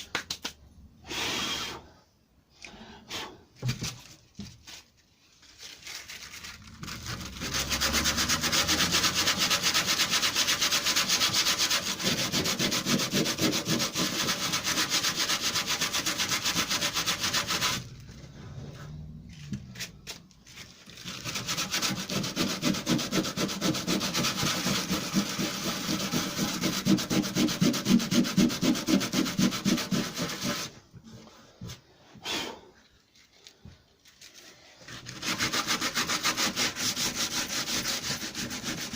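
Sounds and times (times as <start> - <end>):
sandpaper scraping metal: 5.4 - 18.0, 19.7 - 30.8, 34.4 - 38.9.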